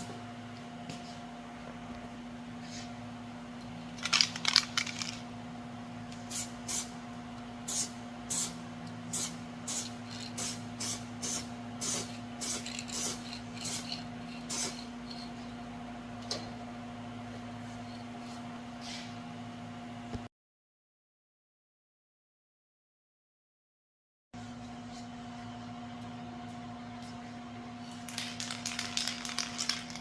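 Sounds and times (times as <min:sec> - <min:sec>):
short spray bursts: 0:07.7 - 0:13.8
spray can rattle: 0:09.2 - 0:15.2, 0:28.1 - 0:30.0.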